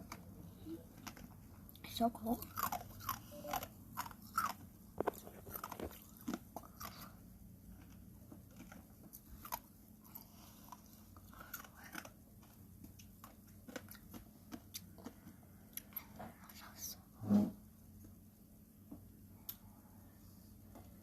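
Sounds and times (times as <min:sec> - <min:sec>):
ice being chewed: 0:00.0 - 0:16.1
faint low hum: 0:00.0 - 0:21.0.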